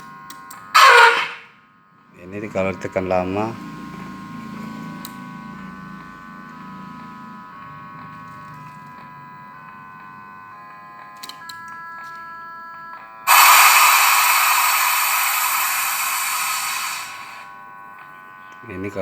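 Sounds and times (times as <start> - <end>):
buzzy electronic chord: 2.2 - 10.7, 13.2 - 19.0.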